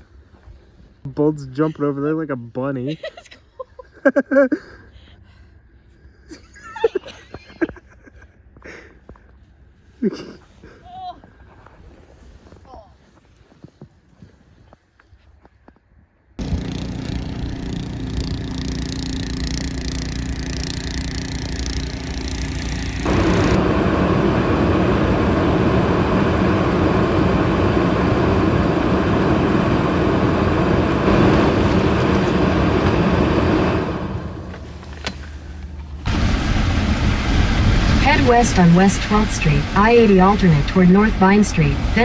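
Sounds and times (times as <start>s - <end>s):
car engine and tyres in snow: 7.1s - 36.4s.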